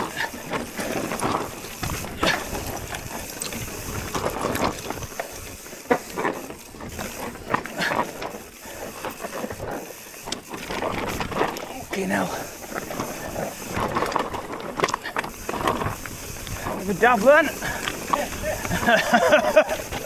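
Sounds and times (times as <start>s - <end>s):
bike clicking and rattling: 0.0s - 20.0s
bike tyres on dirt trail: 0.0s - 20.0s.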